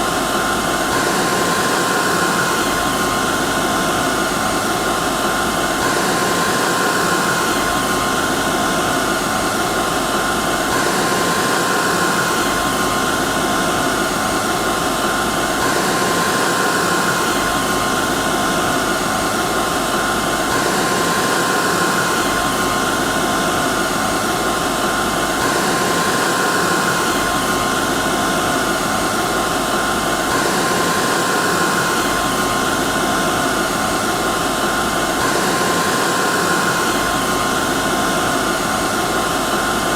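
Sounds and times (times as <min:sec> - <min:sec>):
hair dryer running: 0:00.0 - 0:39.9.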